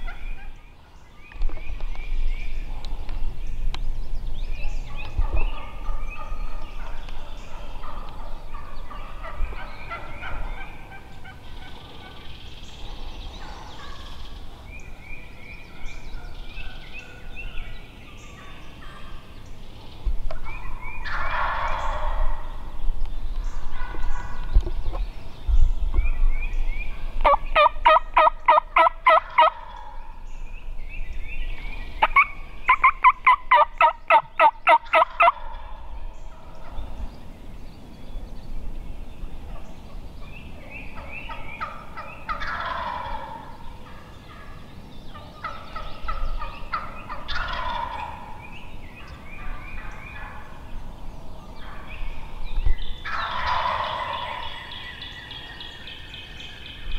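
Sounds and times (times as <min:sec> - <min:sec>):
turkeys gobbling: 0:04.9 - 0:12.3, 0:13.4 - 0:14.2, 0:21.0 - 0:22.6, 0:27.2 - 0:30.2, 0:32.0 - 0:36.8, 0:41.0 - 0:50.7, 0:51.6 - 0:52.3, 0:53.0 - 0:55.6
rapid turkey yelps: 0:27.2 - 0:30.0, 0:32.0 - 0:35.7, 0:41.3 - 0:44.4, 0:45.4 - 0:48.4, 0:53.0 - 0:54.7.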